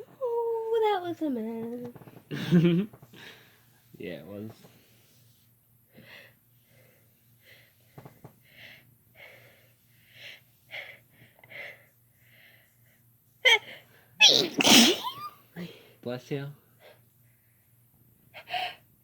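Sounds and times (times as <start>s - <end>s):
woman sneezing: 14.2s - 15.3s.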